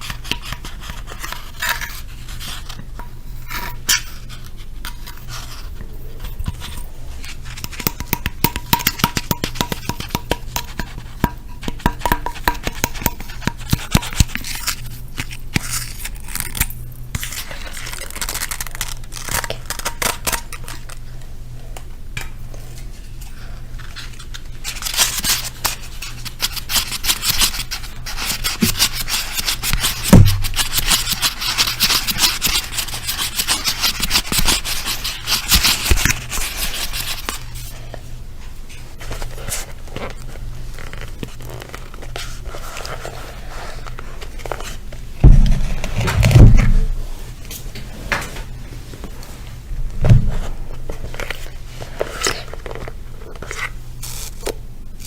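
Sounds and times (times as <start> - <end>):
steady low hum: 0.0 - 17.9, 18.6 - 55.0
scratching and rubbing: 23.8 - 37.7
low thump: 45.2 - 47.1.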